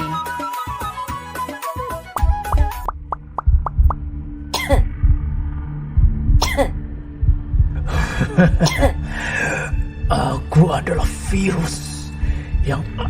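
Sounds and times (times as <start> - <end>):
background music with low beat: 0.0 - 13.0
person coughing: 4.6 - 4.8, 6.4 - 6.8, 8.6 - 9.0.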